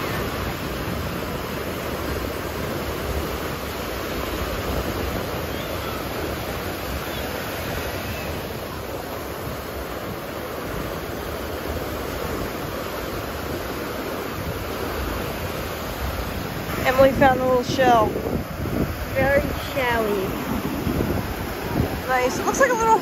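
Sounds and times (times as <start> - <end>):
ocean waves washing onto beach: 0.0 - 23.0.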